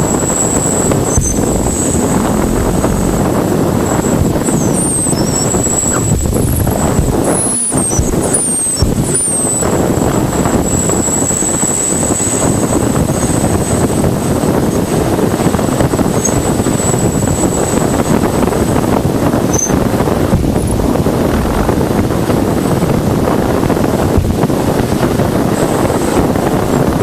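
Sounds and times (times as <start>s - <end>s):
dense rushing hiss: 0.9s - 4.0s.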